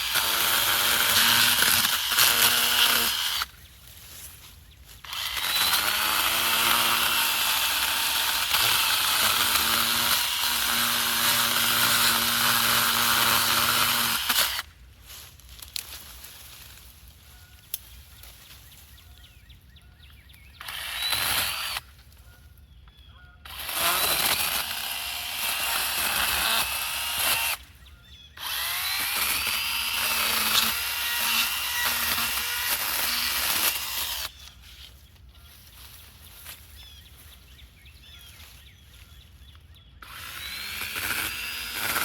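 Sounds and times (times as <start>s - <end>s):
battery pruning saw whining: 0.0s - 3.6s, 4.9s - 14.7s, 20.6s - 22.0s, 23.4s - 34.9s, 40.0s - 42.0s.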